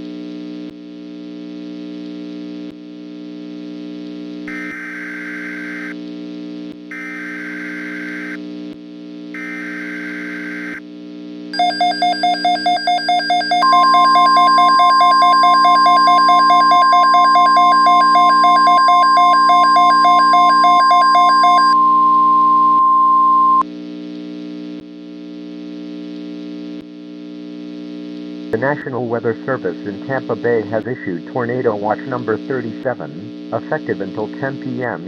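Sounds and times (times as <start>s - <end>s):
steady warning alarm tone: 6.9s - 8.4s, 9.4s - 10.8s, 11.6s - 23.6s
pulsing alarm tone: 11.6s - 23.6s
steady low hum: 13.6s - 35.0s.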